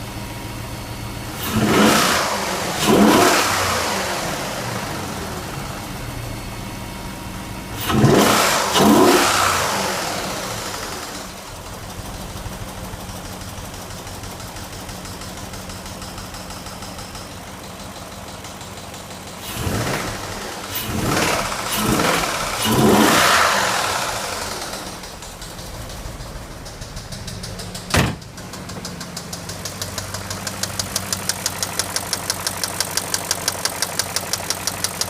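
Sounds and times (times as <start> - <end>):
car engine revving and idling: 0.0 - 35.0
engine knock: 10.6 - 35.0.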